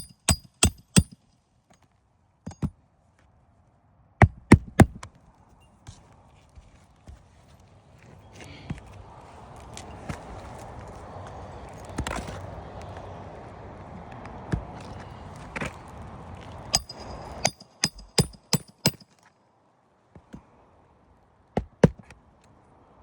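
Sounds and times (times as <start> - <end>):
hammer striking metal: 0.0 - 1.2, 16.7 - 19.0.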